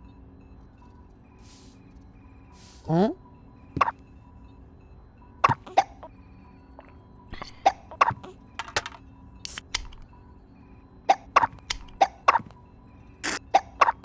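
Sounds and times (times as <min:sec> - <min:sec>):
cartoon squeaks and pops: 0:05.4 - 0:06.1, 0:07.3 - 0:08.8, 0:11.1 - 0:12.5, 0:13.3 - 0:14.0.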